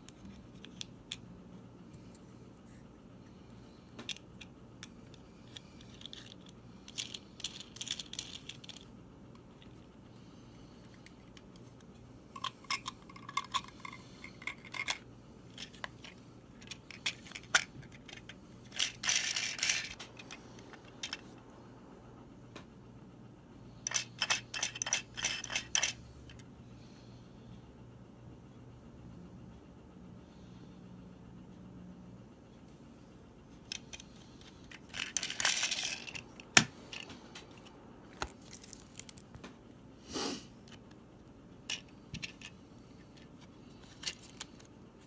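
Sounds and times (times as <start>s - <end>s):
plastic parts clicking and rattling: 3.9s - 9.9s, 10.8s - 21.3s, 23.8s - 26.4s, 33.6s - 39.5s, 41.7s - 44.8s.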